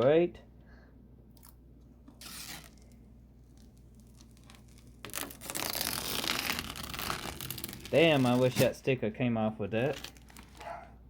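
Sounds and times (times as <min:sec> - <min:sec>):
plastic film peeling: 0:02.0 - 0:08.9, 0:09.8 - 0:11.0.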